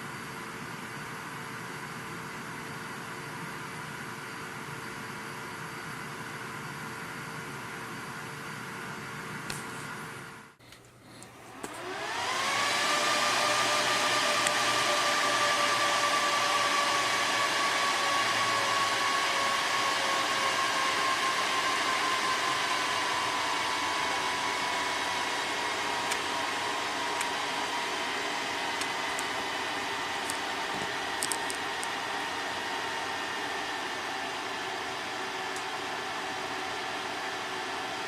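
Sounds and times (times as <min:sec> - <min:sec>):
server cooling fans spinning up: 0:11.3 - 0:38.0.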